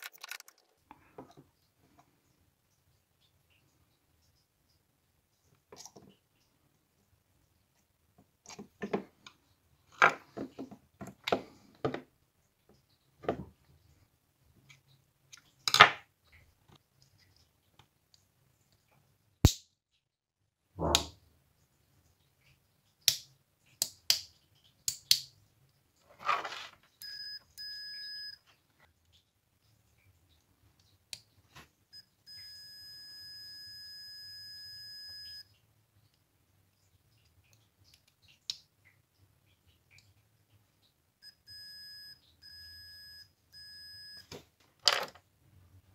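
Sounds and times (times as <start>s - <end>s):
small parts clicking: 0.0s - 0.9s
high-pitched electronic beep: 27.0s - 28.4s, 32.0s - 35.4s, 41.2s - 44.2s.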